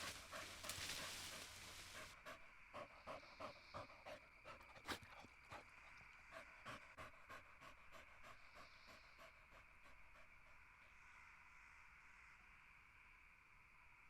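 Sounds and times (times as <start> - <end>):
animal panting: 0.0 - 10.6.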